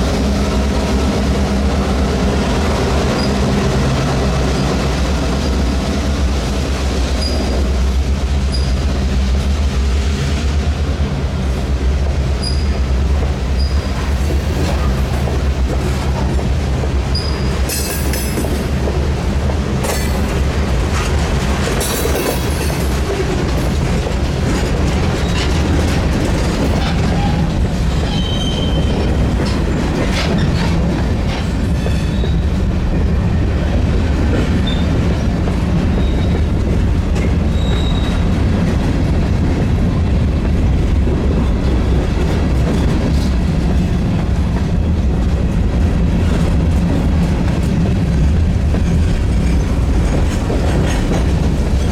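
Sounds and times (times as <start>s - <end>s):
freight train rumbling: 0.0s - 51.9s
wheel squeals: 28.0s - 29.1s, 35.9s - 36.5s, 37.5s - 38.3s.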